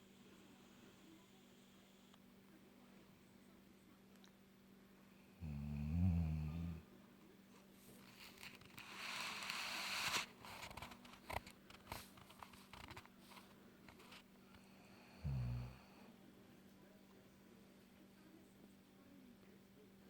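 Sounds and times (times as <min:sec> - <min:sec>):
person snoring: 0:15.2 - 0:15.9.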